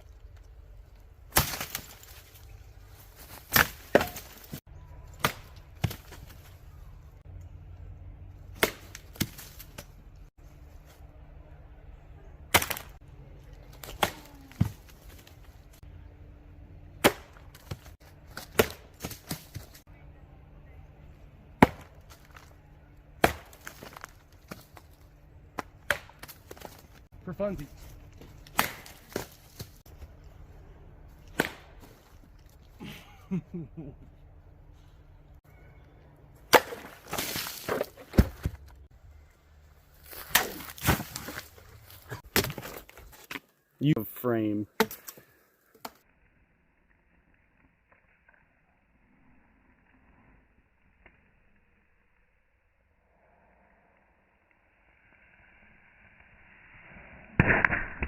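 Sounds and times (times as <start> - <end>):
machete chopping strikes: 1.3 - 2.1, 3.4 - 6.3, 8.5 - 9.6, 12.5 - 13.0, 13.8 - 14.9, 17.0 - 19.7, 21.6 - 22.0, 23.2 - 24.6, 25.6 - 26.7, 28.4 - 29.8, 31.2 - 32.0, 36.5 - 38.6, 40.1 - 41.5.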